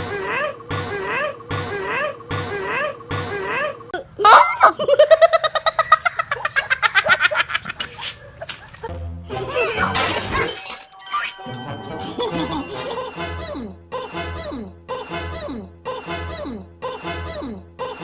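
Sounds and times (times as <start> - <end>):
short repeating cartoon tune: 11.5 - 18.0.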